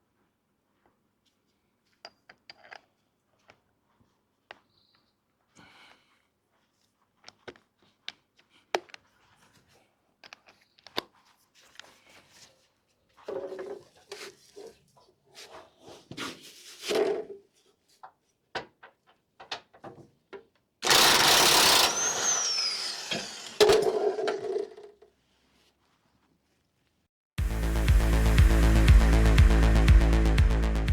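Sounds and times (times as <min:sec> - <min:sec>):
loud power tool running: 0:20.8 - 0:24.0.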